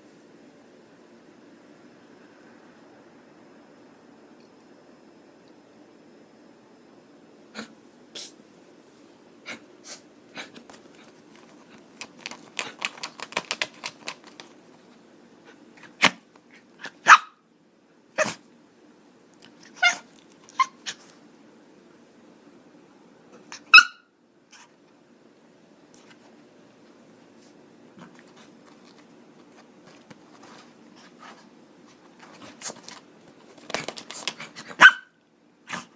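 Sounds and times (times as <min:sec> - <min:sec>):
small dog yapping: 0:16.8 - 0:17.4, 0:18.2 - 0:18.4, 0:19.6 - 0:21.1, 0:23.5 - 0:24.7, 0:34.5 - 0:35.9.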